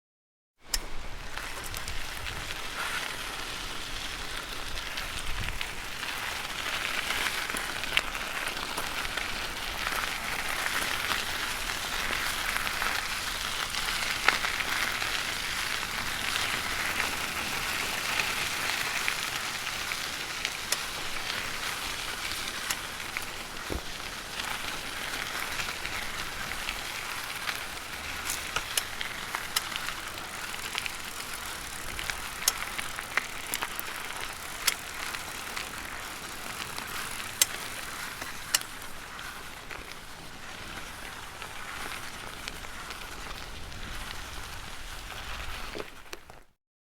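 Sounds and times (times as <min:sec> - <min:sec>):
bicycle tyres crunching on gravel: 0:00.7 - 0:46.6
stones popping under tyres: 0:01.3 - 0:46.4.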